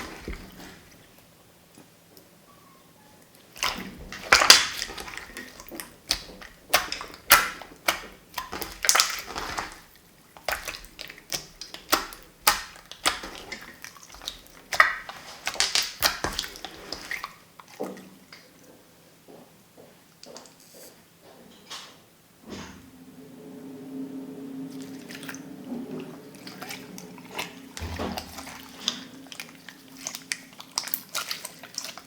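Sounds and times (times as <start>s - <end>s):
wet slime squelches and clicks: 3.6s - 18.4s, 26.4s - 32.0s.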